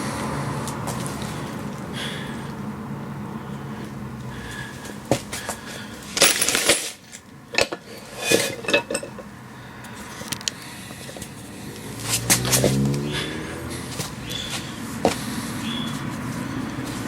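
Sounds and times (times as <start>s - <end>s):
low engine hum: 0.0s - 6.0s, 9.2s - 17.0s
metal tools clinking: 6.0s - 9.3s.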